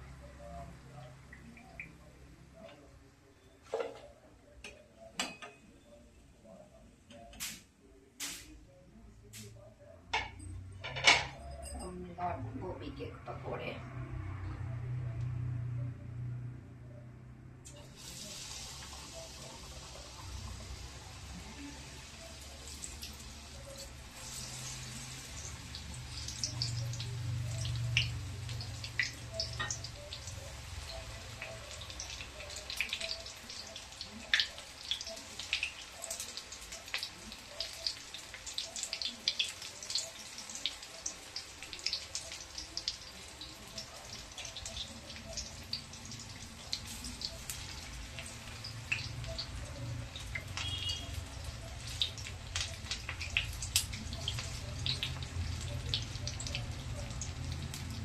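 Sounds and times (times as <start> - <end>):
food deep-frying in hot oil: 0.0 - 4.0, 8.2 - 8.6, 17.7 - 58.0.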